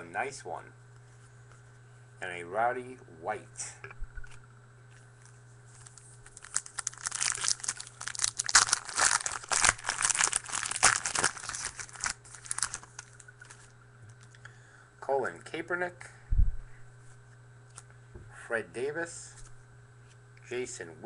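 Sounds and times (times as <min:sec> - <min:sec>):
foil wrapper tearing and crinkling: 0:05.8 - 0:13.7.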